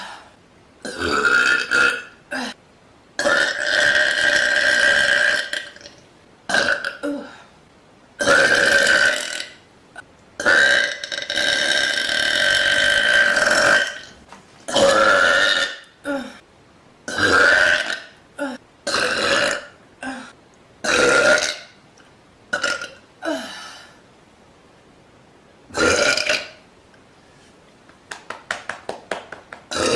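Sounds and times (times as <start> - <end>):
woman burping loudly: 0.8 - 2.6, 3.2 - 7.4, 8.2 - 9.6, 10.4 - 16.4, 17.1 - 21.8, 22.5 - 23.8, 25.7 - 26.6, 29.7 - 29.9.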